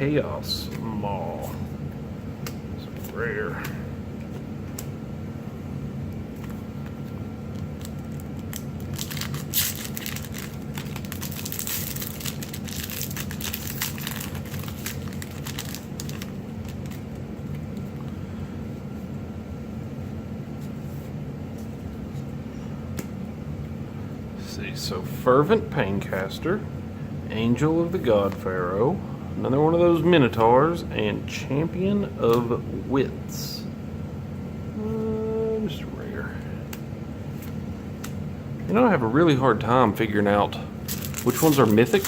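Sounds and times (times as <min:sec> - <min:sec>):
steady low hum: 0:00.0 - 0:42.0
foil wrapper crinkling: 0:07.5 - 0:17.2, 0:40.8 - 0:42.0
cards shuffling: 0:07.8 - 0:17.2, 0:40.9 - 0:42.0.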